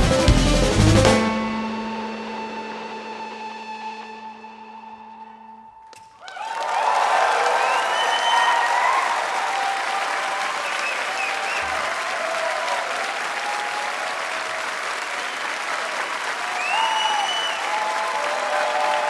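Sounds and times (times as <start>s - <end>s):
audience applauding: 5.9s - 19.0s
people cheering: 5.9s - 19.0s.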